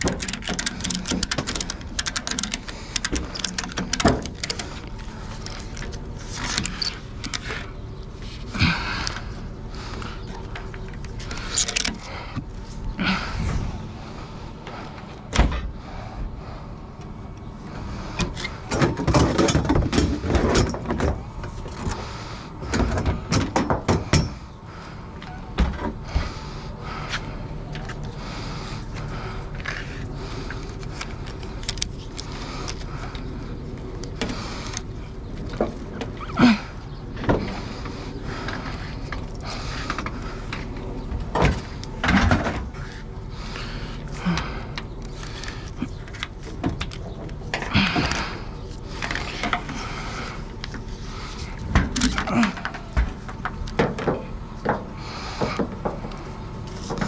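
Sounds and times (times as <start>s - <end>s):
clattering and knocks: 0.0s - 4.8s
vehicle engine running: 0.0s - 18.7s.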